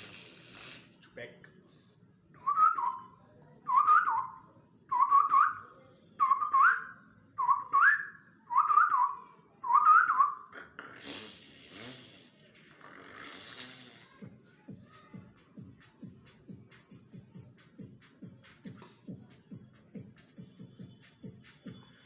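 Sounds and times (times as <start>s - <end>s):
hissing breath noise: 0.0s - 1.0s, 10.8s - 19.1s.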